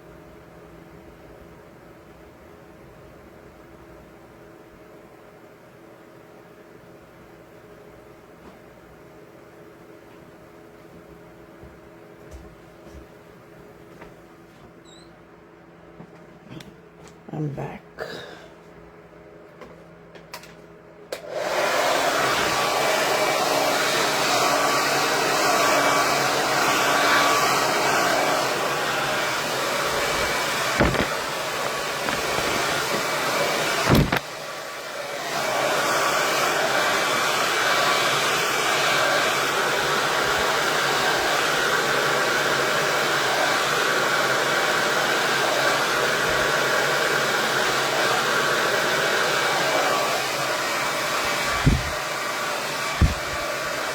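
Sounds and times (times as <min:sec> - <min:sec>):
hair dryer blowing: 0:21.1 - 0:53.9.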